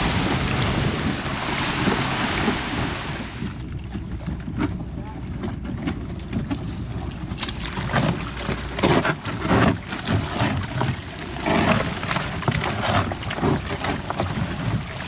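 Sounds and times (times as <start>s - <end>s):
wind buffeting microphone: 0.0s - 7.4s
motorboat engine rumble: 0.0s - 15.0s
water splashing along hull: 0.0s - 15.0s.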